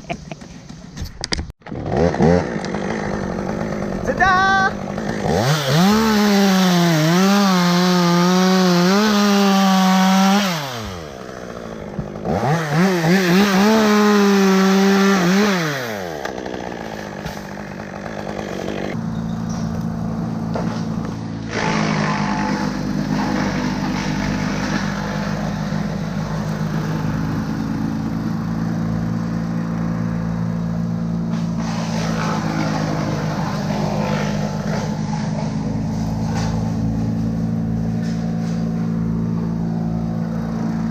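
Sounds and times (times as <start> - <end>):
chainsaw at full throttle: 1.6 - 40.9
lower-pitched engine running: 16.3 - 40.9.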